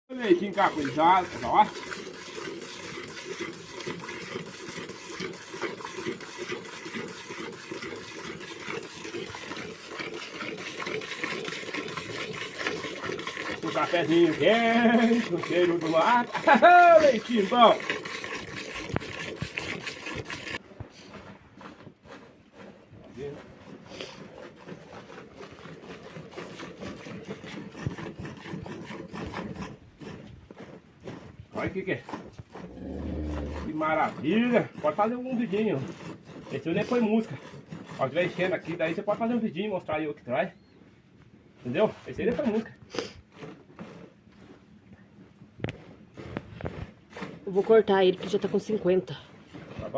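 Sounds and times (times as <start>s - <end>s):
milk squirting into container: 0.2s - 39.1s.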